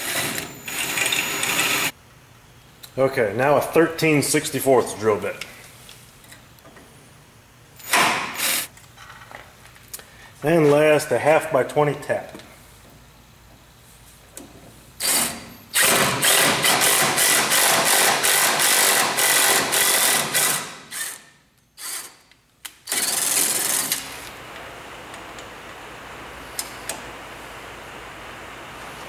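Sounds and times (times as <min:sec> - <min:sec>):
power drill whirring: 0:00.0 - 0:01.9, 0:15.0 - 0:22.2
steady low hiss: 0:00.0 - 0:18.4, 0:20.1 - 0:29.0.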